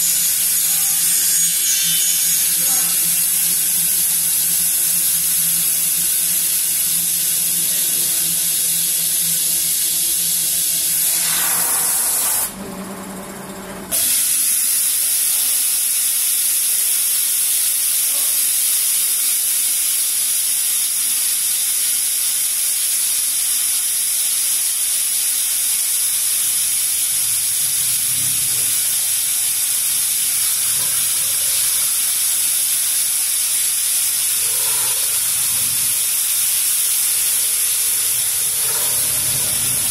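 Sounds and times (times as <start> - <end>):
cnc router spindle hiss: 0.0 - 39.9.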